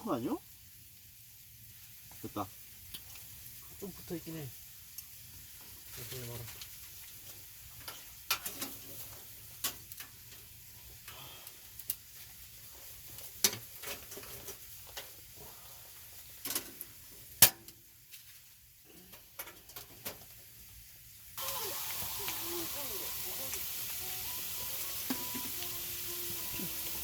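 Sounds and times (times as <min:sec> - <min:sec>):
food sizzling in a pan: 0:00.0 - 0:27.0
utensils tapping a pan: 0:07.8 - 0:09.0, 0:13.4 - 0:15.1, 0:23.1 - 0:27.0.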